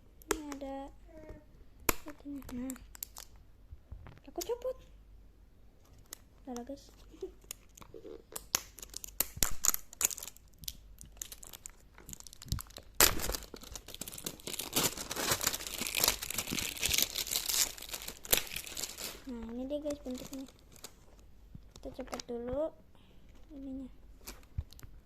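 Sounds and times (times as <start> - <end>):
toy packaging crackling and snapping: 1.8 - 3.4, 5.9 - 21.0, 21.7 - 22.4
wrapping crinkling and tearing: 2.0 - 3.4, 5.9 - 22.4, 24.2 - 25.0.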